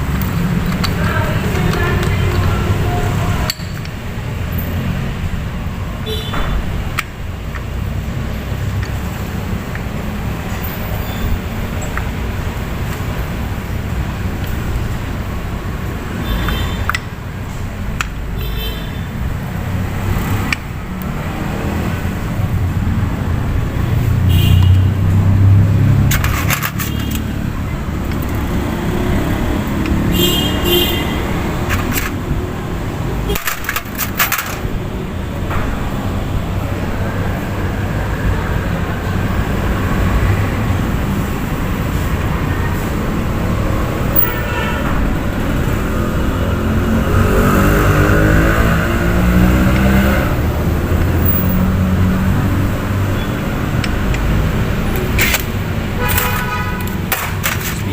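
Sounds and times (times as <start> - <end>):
road traffic rumble: 0.0 - 57.9
metal tools clinking: 3.4 - 4.8, 26.0 - 27.3, 33.3 - 34.8.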